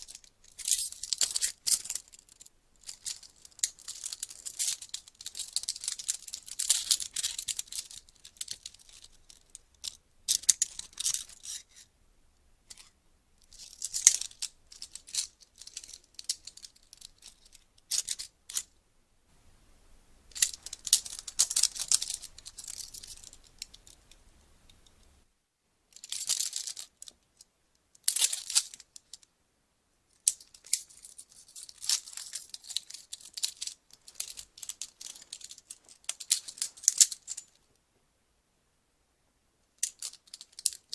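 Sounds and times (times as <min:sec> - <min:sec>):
handcuffs ratchet clicks and rattling: 0:00.0 - 0:11.6, 0:20.3 - 0:24.0, 0:30.3 - 0:37.6, 0:39.8 - 0:40.9.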